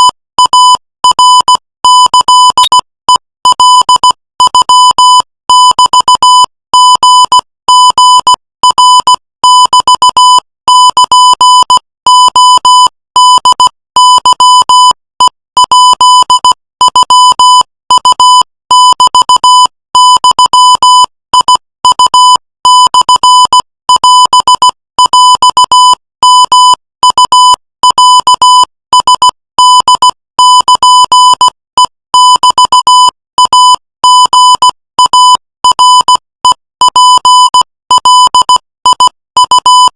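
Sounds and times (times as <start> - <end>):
morse code beeps: 0.0 - 39.9.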